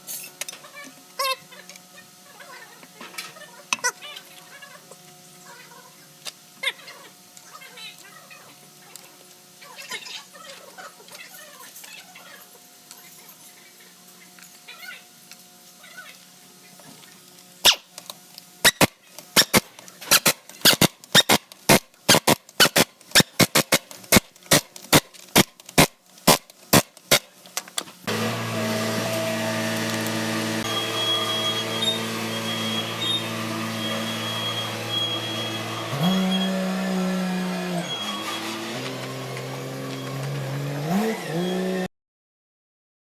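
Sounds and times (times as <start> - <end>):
engine running and revving: 28.1 - 41.9.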